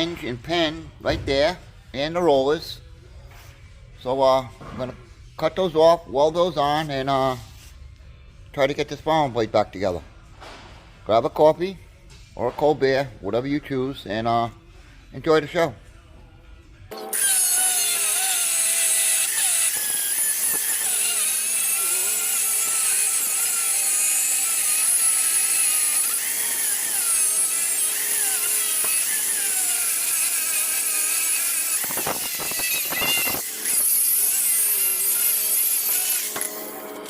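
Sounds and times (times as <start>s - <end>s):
power tool cutting steel: 16.9s - 37.0s.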